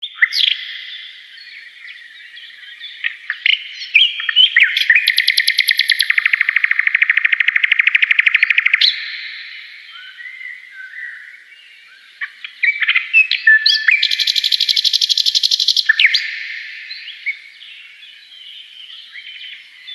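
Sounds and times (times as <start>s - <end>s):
songbirds chirping and whistling: 0.0s - 19.9s
fast bird trill: 3.0s - 9.6s, 12.6s - 17.2s.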